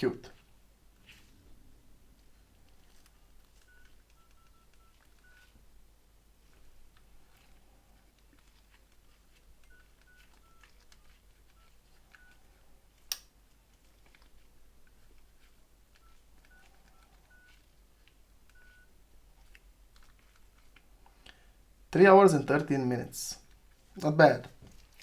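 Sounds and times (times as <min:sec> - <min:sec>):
keypad beeping: 0:02.7 - 0:05.6, 0:08.4 - 0:12.6, 0:15.9 - 0:17.7, 0:18.5 - 0:19.0.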